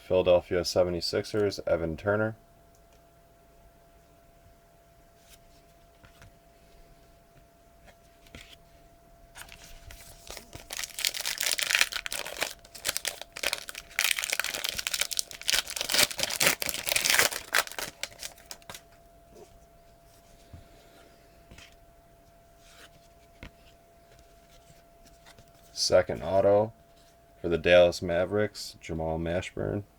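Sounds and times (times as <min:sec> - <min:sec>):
wrapper tearing and crinkling: 0:09.4 - 0:18.8.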